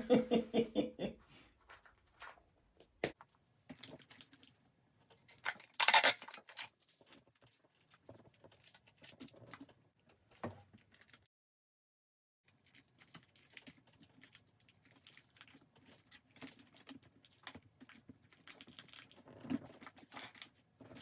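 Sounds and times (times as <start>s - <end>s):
tape ripping off roll: 5.4s - 6.7s.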